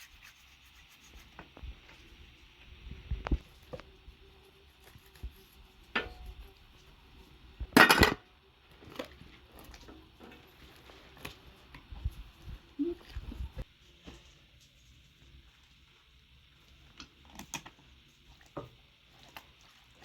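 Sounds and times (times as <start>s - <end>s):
dishes clattering: 7.7s - 8.2s
utensils and dishes clinking: 7.7s - 8.2s.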